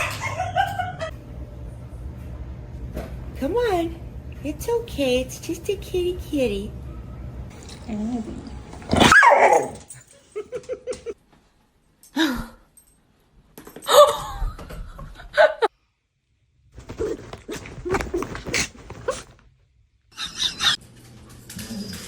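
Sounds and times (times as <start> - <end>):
dog barking and yipping: 8.8 - 10.0.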